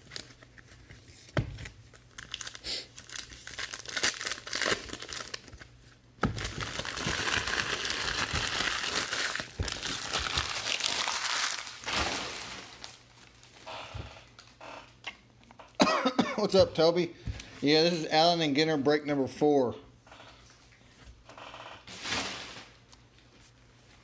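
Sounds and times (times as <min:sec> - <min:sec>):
plastic packaging crinkling: 0:00.0 - 0:13.7.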